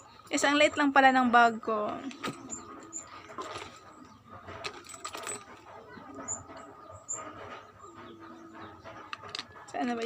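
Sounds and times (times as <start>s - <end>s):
items clicking and rustling in bag: 3.2s - 5.7s.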